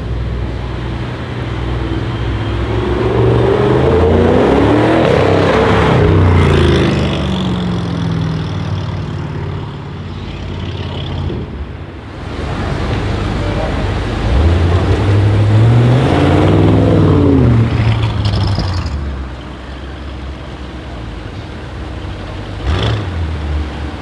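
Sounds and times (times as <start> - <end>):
car engine accelerating past: 1.2 - 11.5, 12.1 - 19.4.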